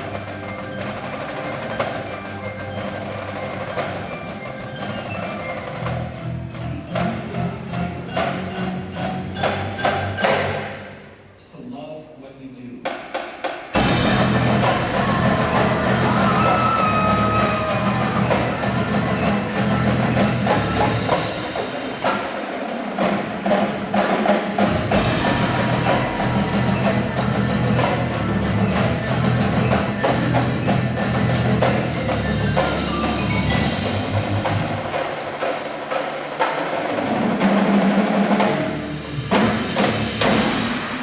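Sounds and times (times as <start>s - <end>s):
pitched mallet percussion: 0.0s - 11.0s, 13.8s - 36.0s
drums and bass drums: 12.9s - 41.0s.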